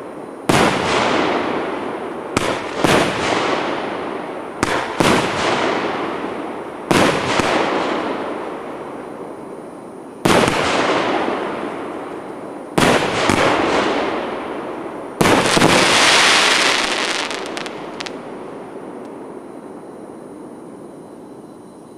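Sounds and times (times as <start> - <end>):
firework bangs with echoing rumble: 0.0 - 8.7, 10.2 - 12.2, 12.8 - 18.3
firework crackles: 0.0 - 9.1, 10.2 - 19.2
firework hiss: 15.2 - 18.2.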